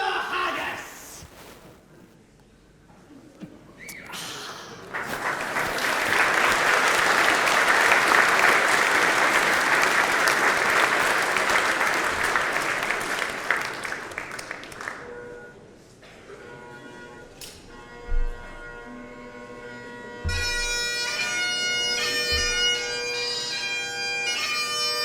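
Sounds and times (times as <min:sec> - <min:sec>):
crowd applauding: 0:03.9 - 0:15.1.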